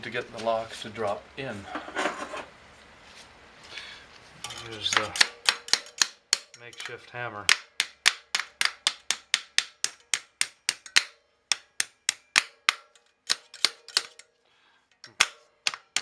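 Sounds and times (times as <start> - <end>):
hammer tapping on metal: 4.4 - 14.2.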